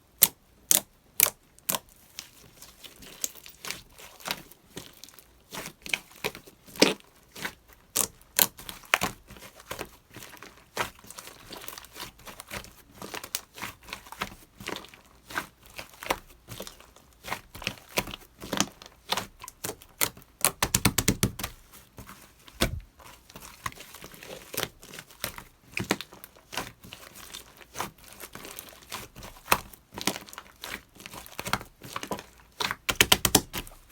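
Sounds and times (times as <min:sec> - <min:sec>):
slime popping and squishing: 0:17.6 - 0:21.6, 0:28.1 - 0:33.8.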